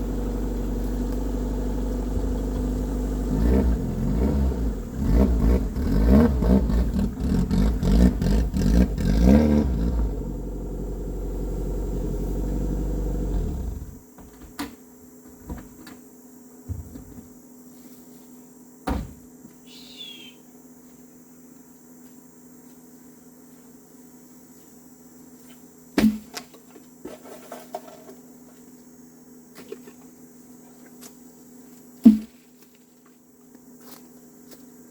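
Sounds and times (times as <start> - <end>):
engine running: 0.0 - 14.0.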